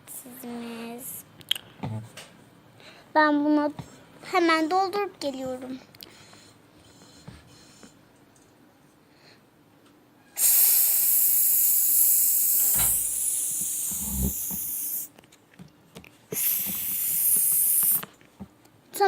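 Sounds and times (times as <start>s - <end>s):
drink filling hiss: 10.4s - 15.1s, 16.3s - 18.1s.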